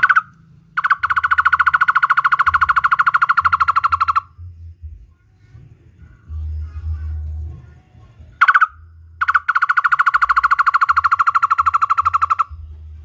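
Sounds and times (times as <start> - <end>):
barbet calling: 0.0 - 4.4, 8.4 - 12.6.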